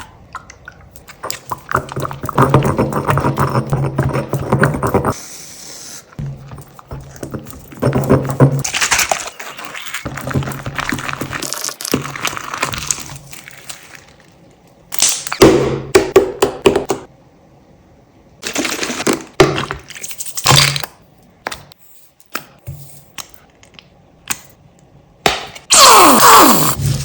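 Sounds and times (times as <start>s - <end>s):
brittle material crunching: 6.3s - 15.3s.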